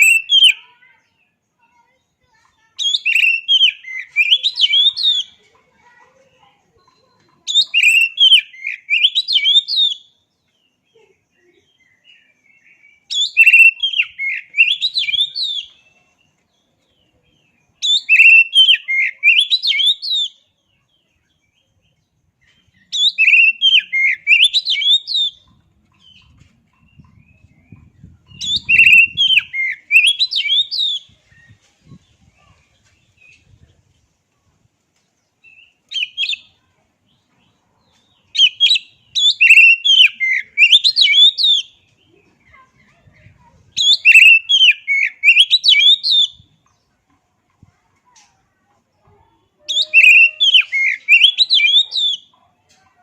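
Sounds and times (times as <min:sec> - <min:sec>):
bird singing whistled notes: 0:00.0 - 0:01.2, 0:02.8 - 0:05.4, 0:07.5 - 0:10.2, 0:11.7 - 0:16.0, 0:17.3 - 0:32.4, 0:35.4 - 0:36.6, 0:38.2 - 0:42.0, 0:43.7 - 0:46.6, 0:49.7 - 0:52.3.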